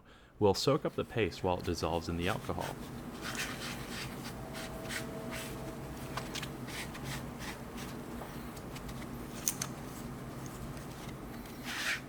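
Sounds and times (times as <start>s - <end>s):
foam rubbing strokes: 2.2s - 5.8s, 11.6s - 12.0s.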